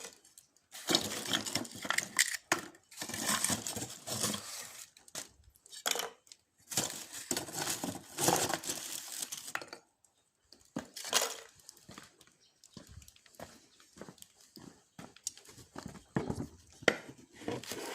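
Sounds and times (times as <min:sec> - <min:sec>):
charcoal clinking and scraping: 0:00.0 - 0:09.8.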